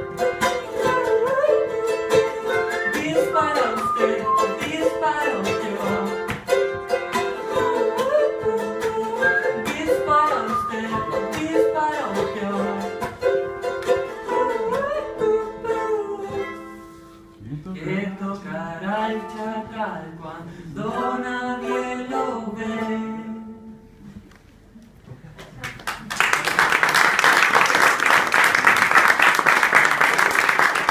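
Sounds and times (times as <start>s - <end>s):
strummed acoustic string instrument: 0.0s - 24.0s
wordless vocal melody: 0.4s - 6.5s, 7.2s - 13.2s, 14.0s - 24.2s.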